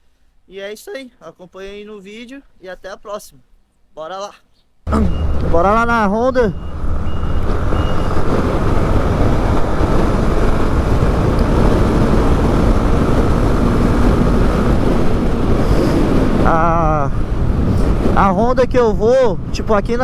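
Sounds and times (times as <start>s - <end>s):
motorcycle engine running: 4.9s - 18.2s
wind roaring over microphone: 4.9s - 20.0s.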